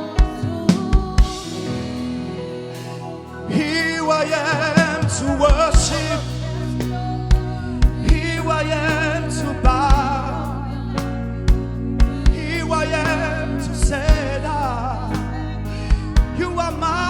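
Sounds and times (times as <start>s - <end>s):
person singing with vibrato: 0.0s - 17.0s
sustained chords and bass: 0.0s - 17.0s
low drum beats: 0.2s - 1.6s, 4.8s - 8.6s, 9.6s - 10.5s, 11.4s - 12.7s, 13.8s - 14.6s, 15.9s - 16.5s.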